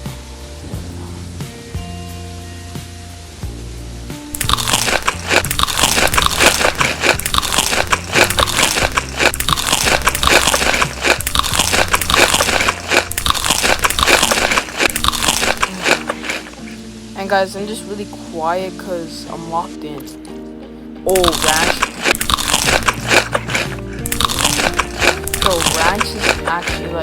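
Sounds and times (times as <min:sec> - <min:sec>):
background music: 0:00.0 - 0:27.0
crunching and chewing crisp food: 0:04.4 - 0:16.9, 0:21.1 - 0:27.0.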